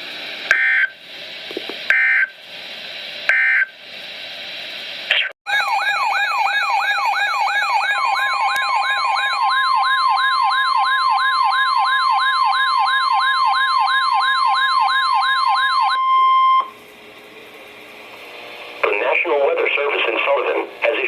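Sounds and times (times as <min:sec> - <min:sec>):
steady alarm tone: 0:05.5 - 0:16.8
sweeping siren alarm: 0:05.5 - 0:16.8
faint radio hiss: 0:16.8 - 0:21.0.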